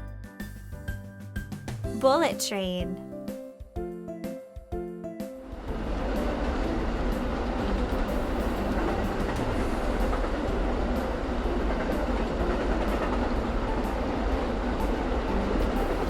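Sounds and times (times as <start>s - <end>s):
train rumbling along track: 5.5s - 16.0s.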